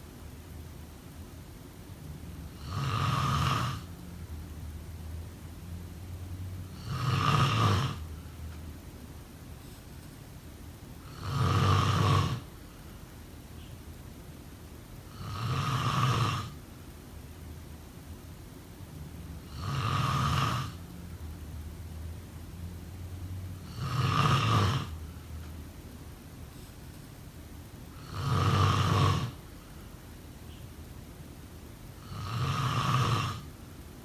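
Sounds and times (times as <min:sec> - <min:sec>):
person snoring loudly: 0:02.6 - 0:03.9, 0:06.7 - 0:08.1, 0:11.0 - 0:12.5, 0:15.1 - 0:16.6, 0:19.4 - 0:20.8, 0:23.6 - 0:25.0, 0:28.0 - 0:29.4, 0:32.0 - 0:33.6.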